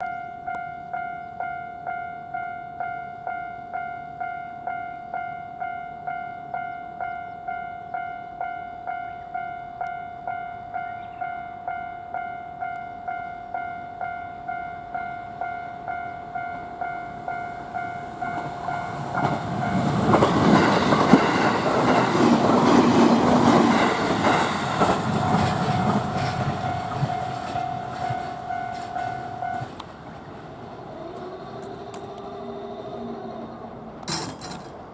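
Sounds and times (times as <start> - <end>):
level crossing warning bell: 0.0 - 34.9
train rumble: 14.9 - 34.9.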